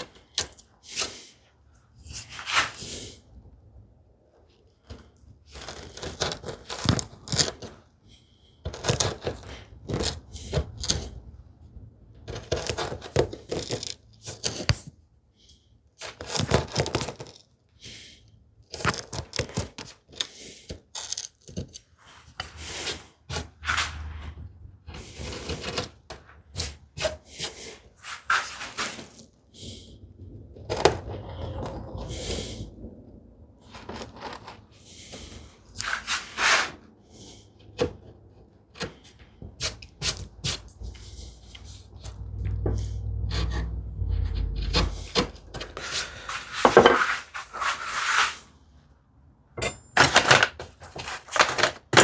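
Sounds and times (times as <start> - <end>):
chisel scraping wood: 40.9 - 48.4.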